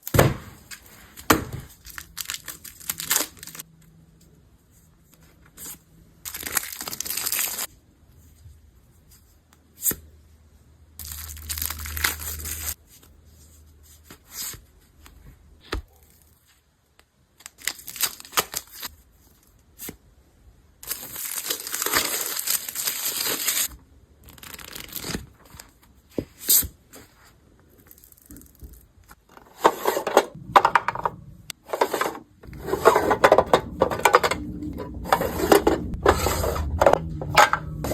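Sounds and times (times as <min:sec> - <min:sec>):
packaging torn and crinkled: 0:01.8 - 0:03.6, 0:06.3 - 0:07.7, 0:11.0 - 0:12.8, 0:17.4 - 0:18.9, 0:20.8 - 0:25.4.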